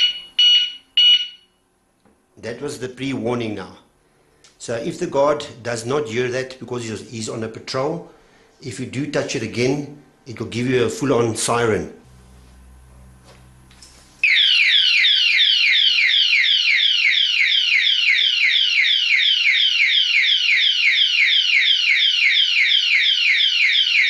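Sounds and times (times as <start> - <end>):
padlock alarm siren warbling: 0.0 - 1.4, 14.2 - 24.0.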